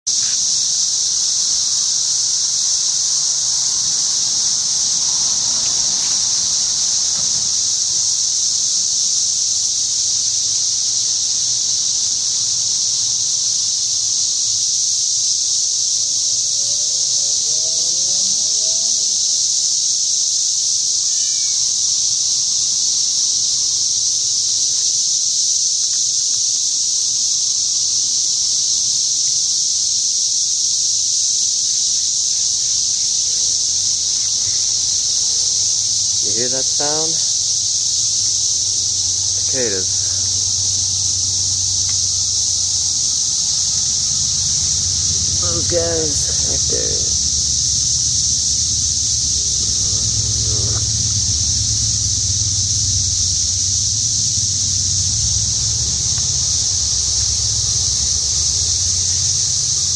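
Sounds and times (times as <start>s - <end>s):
cicadas buzzing: 0.0s - 59.9s.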